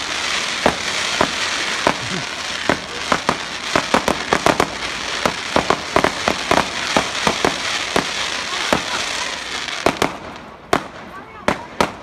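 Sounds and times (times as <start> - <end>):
crackling hiss: 0.0 - 11.2
fireworks bangs and cracks: 0.0 - 12.0.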